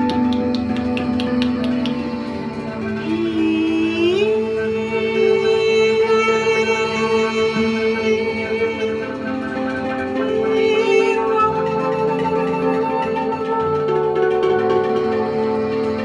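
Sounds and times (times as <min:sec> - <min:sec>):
sustained droning tones: 0:00.0 - 0:16.0.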